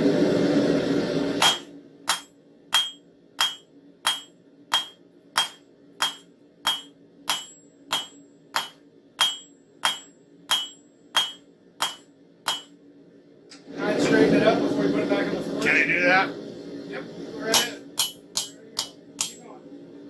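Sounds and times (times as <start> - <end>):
faint steady hum: 0.0 - 20.0
hammer blows on anvil: 1.4 - 12.8, 17.5 - 19.4.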